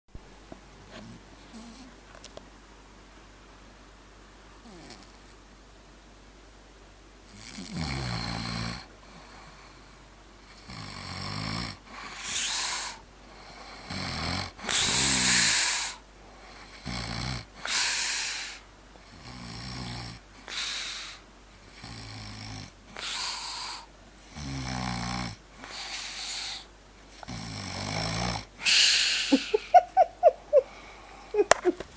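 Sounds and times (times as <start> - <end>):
person snoring: 7.3 - 9.6, 10.5 - 16.0, 16.6 - 29.8.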